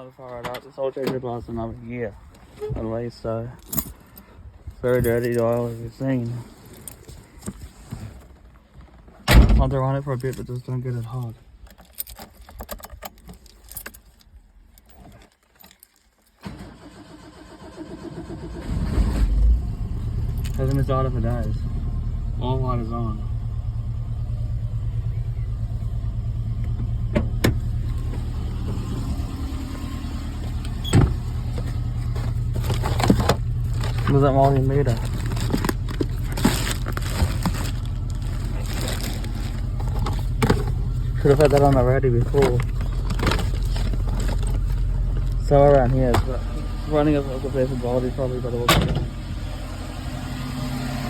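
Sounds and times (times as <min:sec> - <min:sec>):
car keys jingling: 0:03.6 - 0:07.4, 0:09.8 - 0:16.9, 0:20.2 - 0:21.6, 0:30.1 - 0:46.9
car engine starter cranking: 0:16.4 - 0:22.0, 0:26.2 - 0:49.4.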